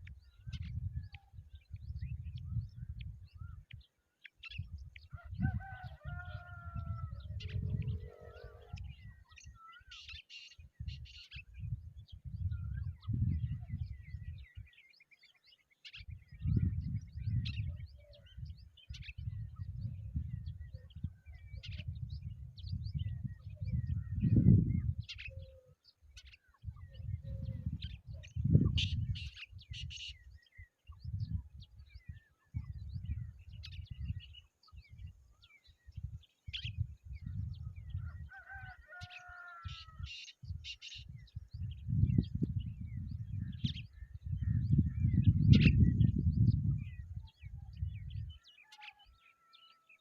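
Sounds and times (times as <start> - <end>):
birds chirping: 0.0 - 50.0.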